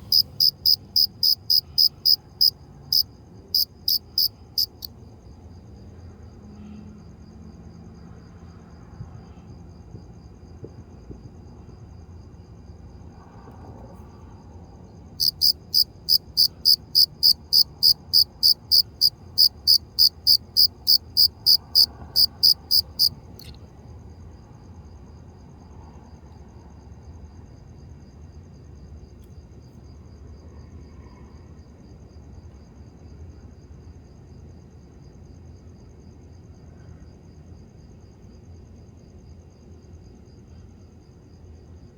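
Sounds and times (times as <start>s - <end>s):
faint steady chirping: 0.0s - 4.9s, 15.2s - 23.6s
cricket chirping: 0.0s - 41.9s.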